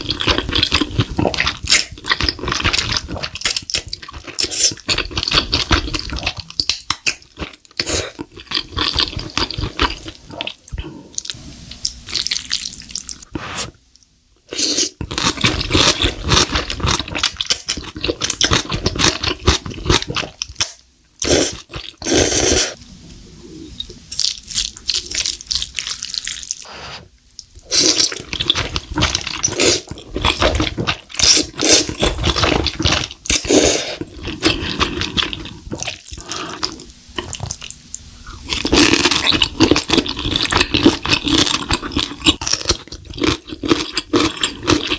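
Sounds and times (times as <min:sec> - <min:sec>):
wet chewing and slurping: 0:00.0 - 0:13.8, 0:14.5 - 0:22.8, 0:23.7 - 0:44.9.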